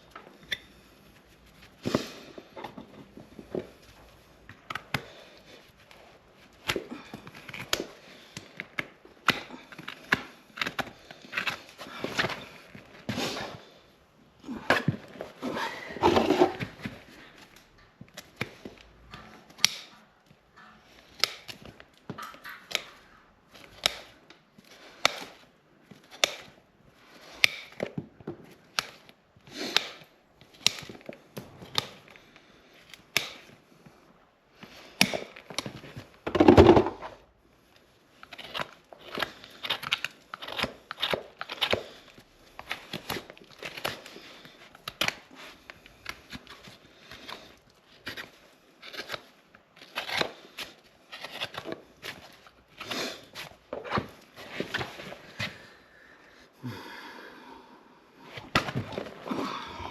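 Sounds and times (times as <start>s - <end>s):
tools cutting horse's hoof: 6.6s - 13.6s, 14.7s - 26.6s, 27.2s - 28.0s, 28.6s - 33.6s, 38.2s - 55.4s.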